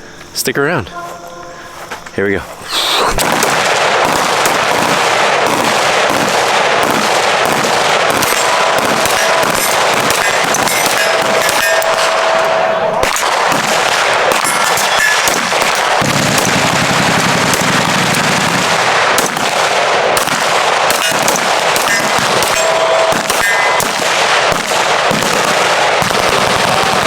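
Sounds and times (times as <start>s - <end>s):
continuous heavy gunfire: 3.2s - 27.0s
ringing steel targets: 6.9s - 18.2s, 20.0s - 26.2s.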